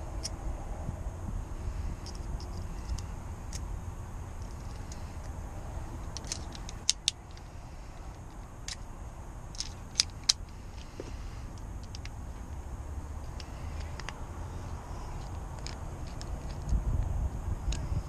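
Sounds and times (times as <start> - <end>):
steady low hum: 0.0 - 18.0
metal tool clicks and clinks: 6.0 - 7.5.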